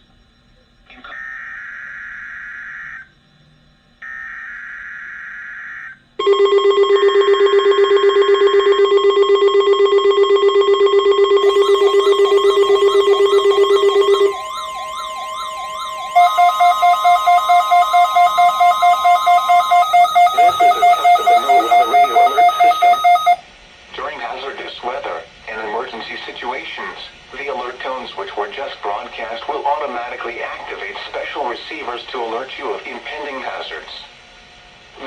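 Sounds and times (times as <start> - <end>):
rapid beeping: 11.0 - 23.4
pulsing alert tone: 11.4 - 23.4
screechy digital data bursts: 11.4 - 23.4
warbling siren-like sweeps: 11.4 - 23.4.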